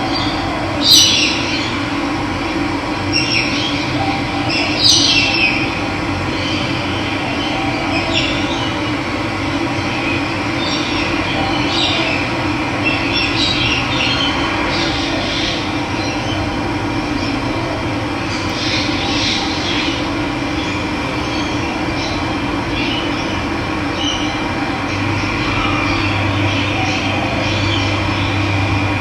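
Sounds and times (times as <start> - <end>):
small birds chirping: 3.1 - 5.7.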